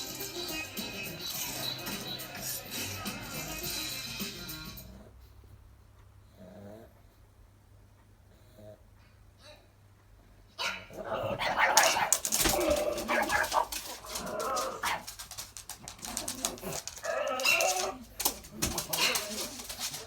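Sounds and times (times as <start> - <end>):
dog barking: 10.6 - 15.2, 16.0 - 20.0.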